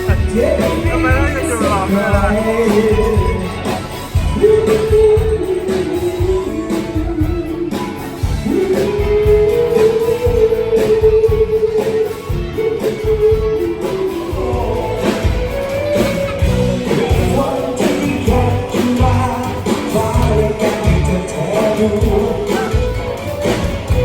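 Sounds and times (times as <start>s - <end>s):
guitar: 0.0s - 24.0s
steady beat: 0.0s - 24.0s.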